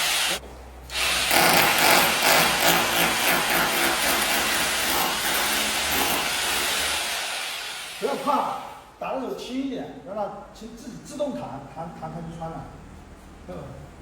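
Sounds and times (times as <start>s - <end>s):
hammer drill boring into brick: 0.0s - 8.0s.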